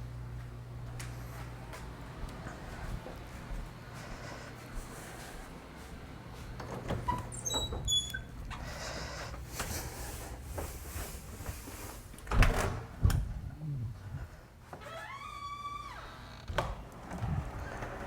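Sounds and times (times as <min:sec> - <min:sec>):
short squeaks: 0:07.1 - 0:08.4.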